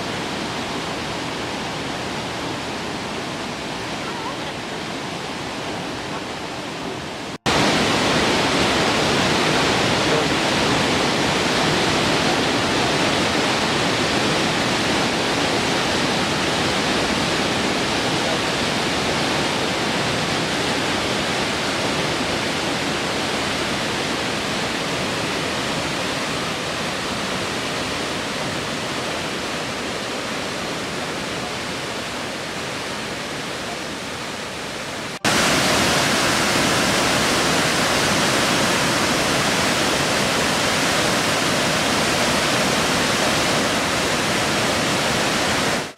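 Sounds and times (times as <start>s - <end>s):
waterfall rushing: 0.0s - 45.9s.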